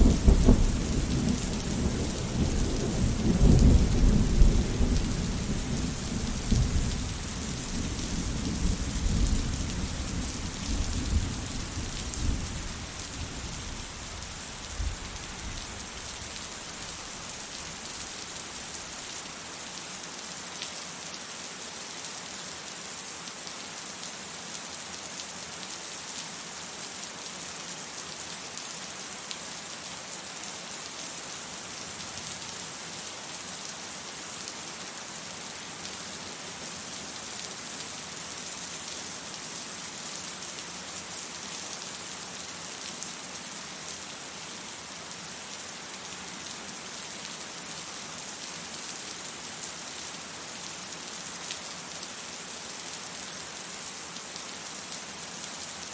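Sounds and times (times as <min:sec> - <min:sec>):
rain pattering: 0:00.0 - 0:19.9.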